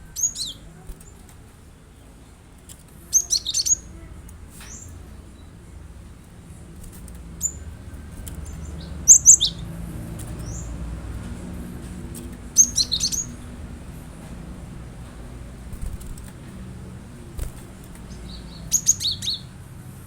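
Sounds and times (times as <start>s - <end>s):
steady low rumble: 3.8s - 20.0s
bird calling in sharp notes: 8.4s - 9.8s, 12.4s - 13.8s.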